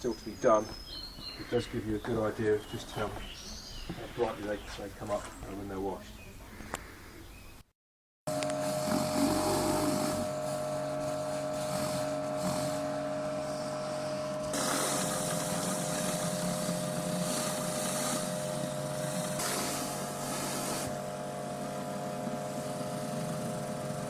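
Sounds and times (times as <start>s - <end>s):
pressure washer running: 8.3s - 24.0s
water spray hissing: 14.5s - 21.1s.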